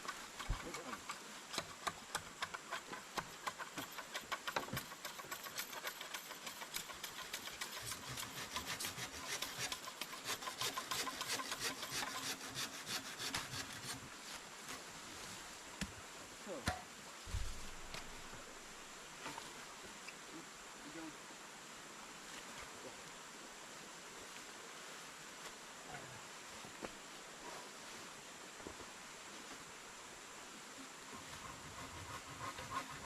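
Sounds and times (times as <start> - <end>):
tool rasping on wood: 0.3 - 14.1, 31.3 - 33.0.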